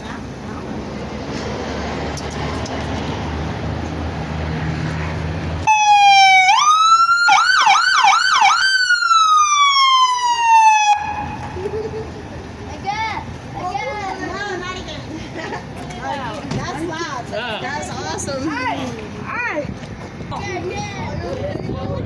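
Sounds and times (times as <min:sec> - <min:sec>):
police siren wailing: 0:05.6 - 0:11.9.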